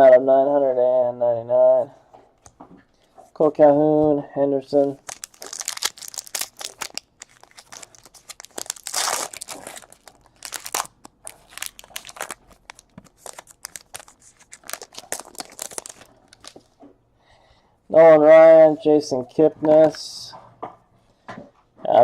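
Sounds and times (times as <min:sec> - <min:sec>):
card pack wrappers crinkling: 0:04.8 - 0:16.8.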